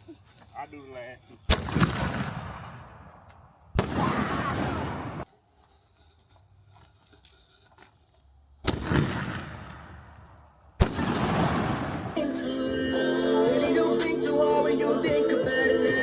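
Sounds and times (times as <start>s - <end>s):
firework bangs: 1.5s - 3.1s, 3.7s - 5.2s, 8.6s - 10.2s, 10.8s - 12.2s
background music: 12.2s - 16.0s.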